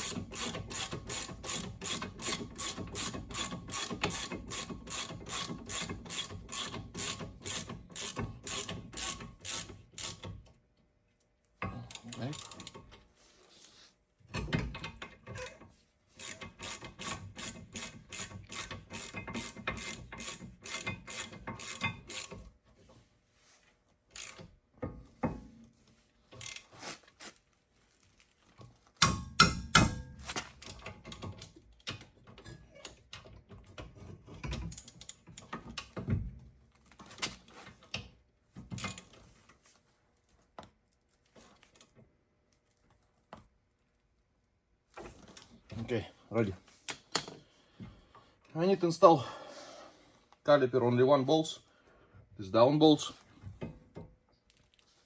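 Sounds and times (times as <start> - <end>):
ratchet wrench clicking: 0.0 - 10.2, 11.9 - 12.8, 16.2 - 22.4, 24.2 - 24.4.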